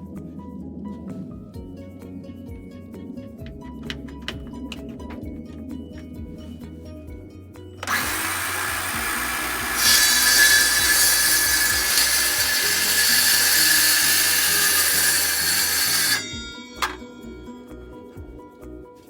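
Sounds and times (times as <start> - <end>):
power tool whining on wood: 7.8 - 17.4.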